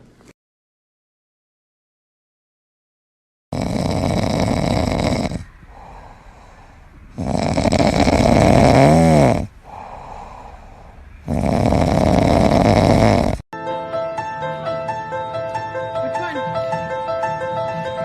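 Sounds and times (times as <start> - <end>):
animal snoring: 3.5 - 13.4
quiet breaths: 3.6 - 13.4.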